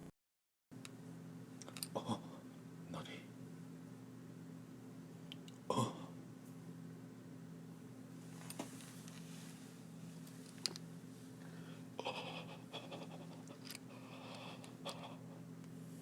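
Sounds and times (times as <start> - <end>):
low electrical hum: 0.8 - 16.0
faint breathy noises: 11.4 - 15.5.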